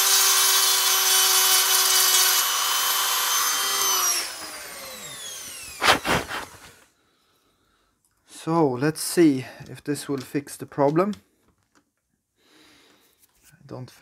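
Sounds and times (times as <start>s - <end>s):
power tool motor whining: 0.0s - 6.8s.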